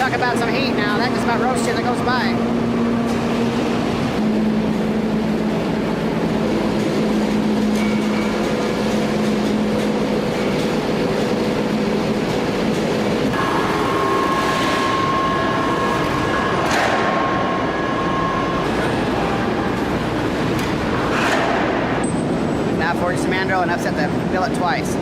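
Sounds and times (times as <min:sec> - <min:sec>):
machinery whining tones: 0:00.0 - 0:24.3
heavy machinery running: 0:00.0 - 0:25.0.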